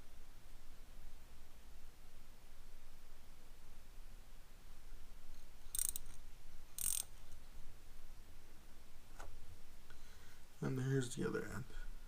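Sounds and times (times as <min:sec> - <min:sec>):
ratchet wrench clicking: 0:05.7 - 0:07.1.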